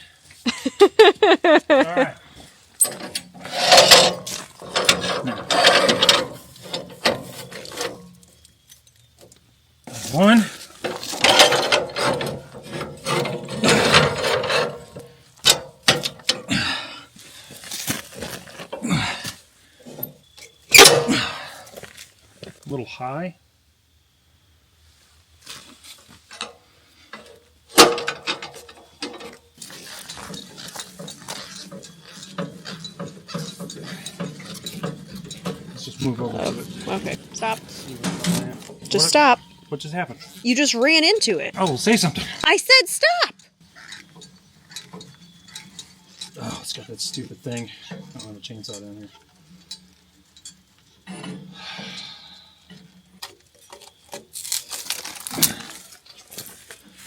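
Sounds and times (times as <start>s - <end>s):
metal clanks: 2.8s - 16.8s, 19.8s - 21.5s, 26.3s - 42.8s, 43.6s - 56.4s.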